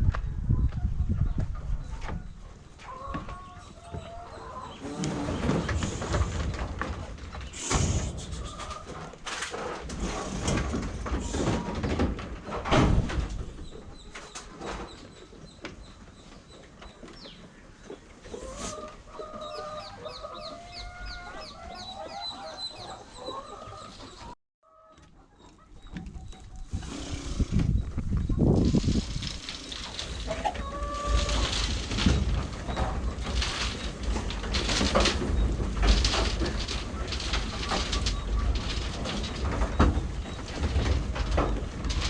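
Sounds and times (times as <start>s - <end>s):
chickens clucking: 0.4s - 42.0s
heavy bumps and rumbles: 26.7s - 42.0s.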